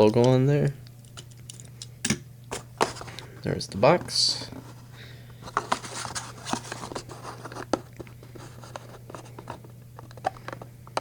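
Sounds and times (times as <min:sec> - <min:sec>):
packaging crinkling and clicking: 0:00.9 - 0:03.3, 0:05.3 - 0:11.0.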